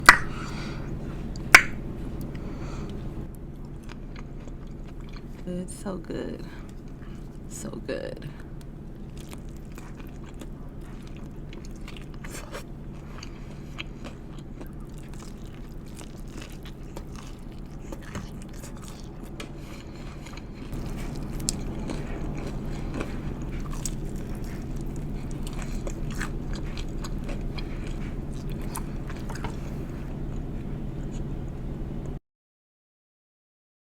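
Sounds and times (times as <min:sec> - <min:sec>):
crunchy biting and chewing: 0:00.0 - 0:05.5, 0:08.8 - 0:31.3
steady low hum: 0:00.0 - 0:32.2
wet mouth sounds: 0:09.1 - 0:31.3.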